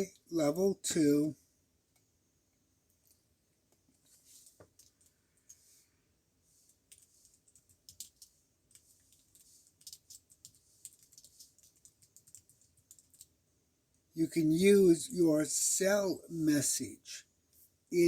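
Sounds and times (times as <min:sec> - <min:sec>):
keyboard typing: 0:06.9 - 0:13.4.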